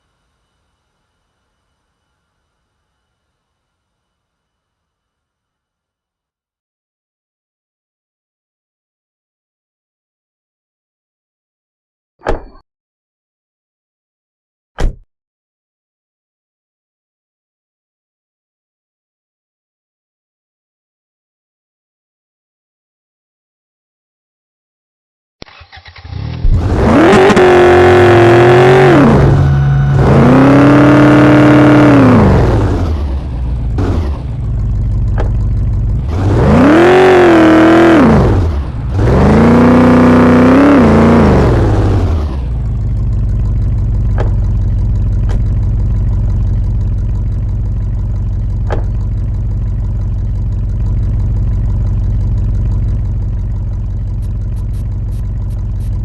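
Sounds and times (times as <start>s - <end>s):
engine revving and idling: 25.5s - 56.0s.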